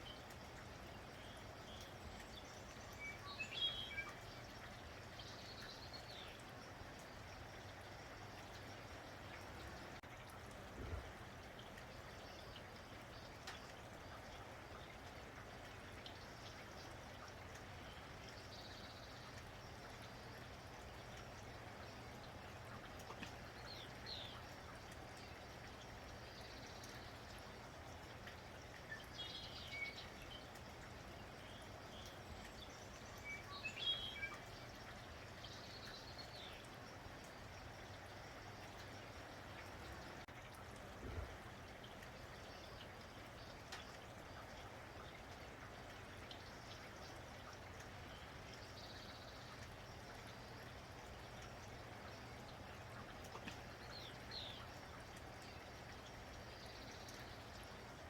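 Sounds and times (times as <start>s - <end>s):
small birds chirping: 0.0s - 10.1s, 11.4s - 40.3s, 41.1s - 58.0s
light rain falling: 0.0s - 58.0s.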